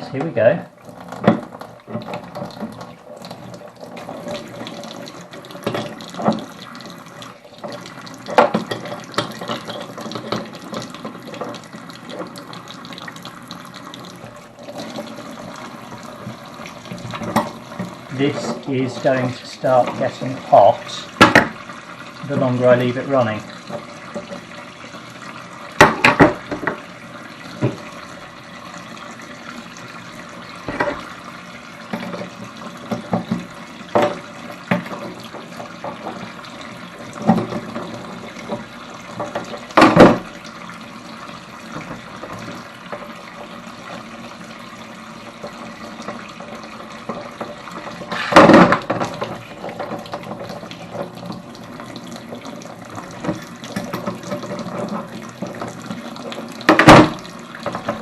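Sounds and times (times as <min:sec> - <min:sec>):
water running from tap into sink: 0:00.0 - 0:58.0
sharp knocks and clatters: 0:01.1 - 0:06.6, 0:07.6 - 0:12.5, 0:21.2 - 0:21.6, 0:25.8 - 0:26.8, 0:30.6 - 0:31.1, 0:31.9 - 0:36.3, 0:37.1 - 0:40.3, 0:47.0 - 0:51.4, 0:56.6 - 0:58.0.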